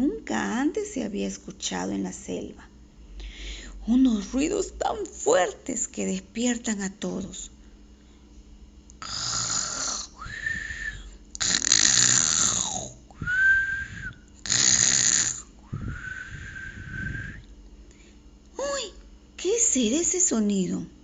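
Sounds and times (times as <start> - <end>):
cartoon lion snoring: 9.0 - 10.2, 11.4 - 13.0, 14.4 - 15.5.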